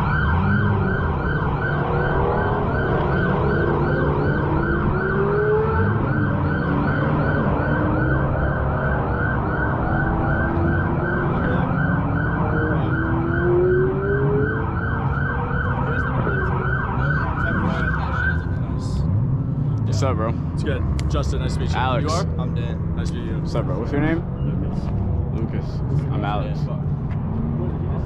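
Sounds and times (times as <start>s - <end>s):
police siren yelping: 0.0s - 19.0s
car engines running: 0.0s - 28.0s.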